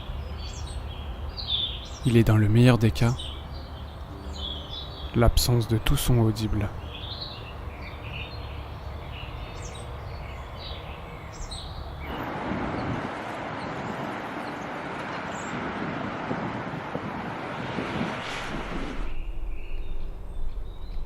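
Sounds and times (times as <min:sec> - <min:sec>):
bird chirps: 0:02.9 - 0:12.2, 0:19.0 - 0:21.0
steady rushing noise: 0:12.0 - 0:20.7.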